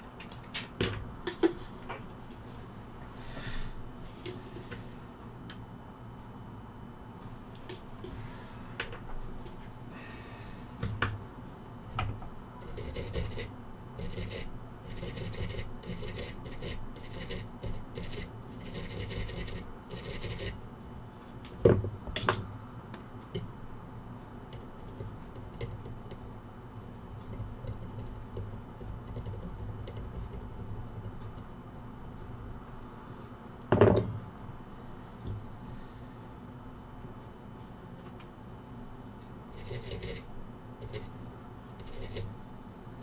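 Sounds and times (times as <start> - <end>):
tools clicking and knocking on bench: 21.5 - 23.5, 33.7 - 34.2.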